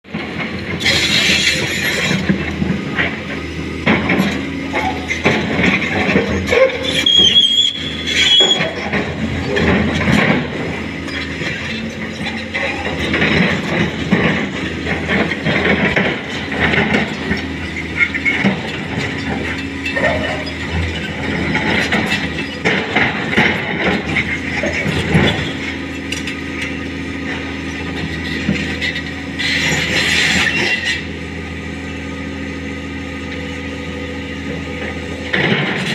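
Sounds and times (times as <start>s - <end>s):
diesel engine running: 0.1s - 35.9s
metallic clanks and creaks: 0.2s - 31.1s
high squeal: 6.8s - 8.8s.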